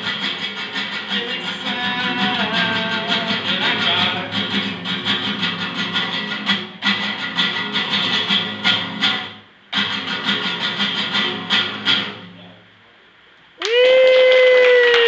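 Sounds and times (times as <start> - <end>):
acoustic guitar strumming: 0.0 - 12.6
long held vocal shout: 13.6 - 15.0.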